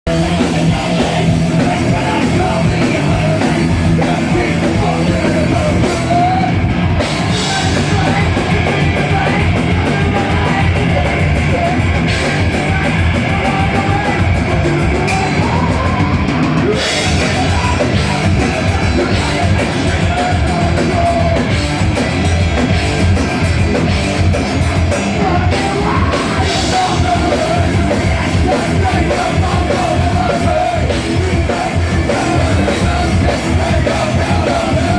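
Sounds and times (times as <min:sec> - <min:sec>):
heavy metal band playing: 0:00.0 - 0:34.9.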